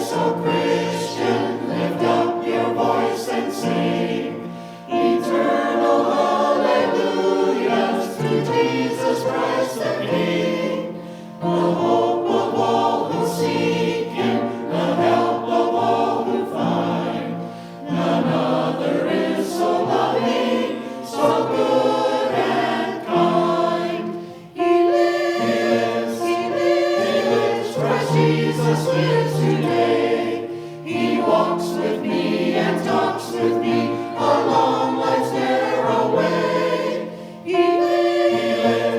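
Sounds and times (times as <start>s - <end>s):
choir singing a hymn: 0.0s - 38.9s
singers breathing: 4.4s - 5.0s, 11.0s - 11.4s, 17.4s - 18.0s, 24.0s - 24.6s, 30.5s - 30.9s, 37.0s - 37.5s.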